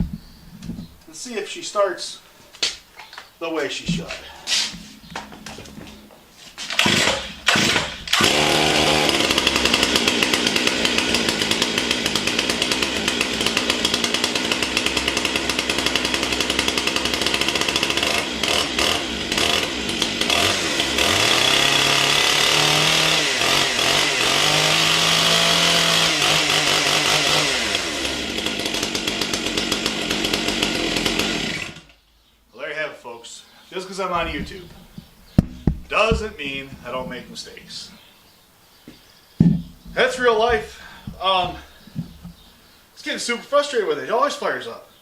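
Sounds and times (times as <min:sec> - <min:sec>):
chainsaw pull-starter: 0:06.6 - 0:32.0, 0:34.2 - 0:37.2, 0:39.4 - 0:42.5
chainsaw engine running: 0:06.7 - 0:31.9, 0:34.2 - 0:37.4, 0:39.4 - 0:42.5.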